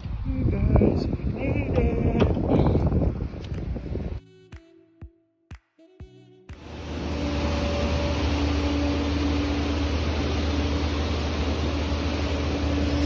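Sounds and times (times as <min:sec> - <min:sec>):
low hum: 0:06.6 - 0:13.0.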